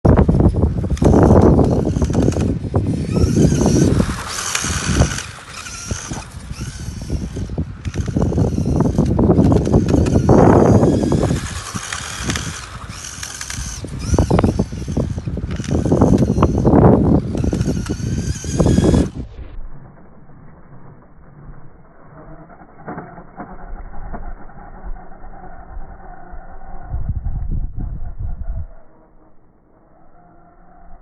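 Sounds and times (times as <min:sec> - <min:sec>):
high motor whine: 0:00.0 - 0:31.0
toy car drivetrain clattering: 0:00.1 - 0:19.3.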